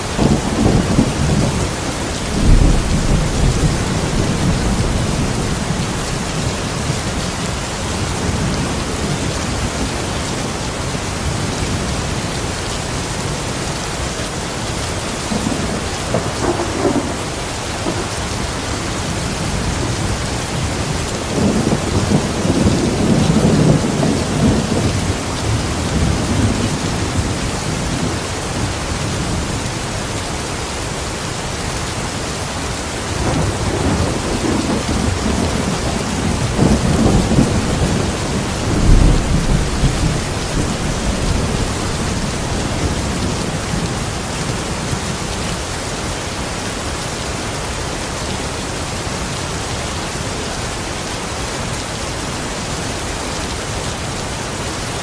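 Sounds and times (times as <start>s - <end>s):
heavy rain: 0.0s - 55.0s
rolling thunder: 0.1s - 7.2s, 15.1s - 29.7s, 33.1s - 45.3s.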